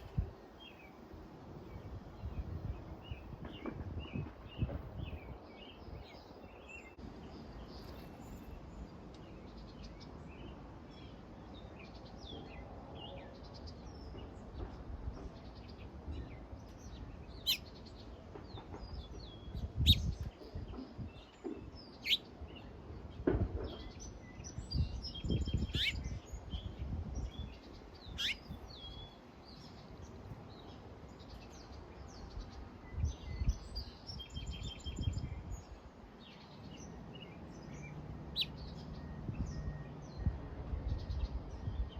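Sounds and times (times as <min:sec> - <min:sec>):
low rumbling gusts: 0:00.0 - 0:07.6, 0:12.5 - 0:41.9
birds chirping and calling: 0:01.6 - 0:41.9
sharp falling bird calls: 0:17.4 - 0:17.8.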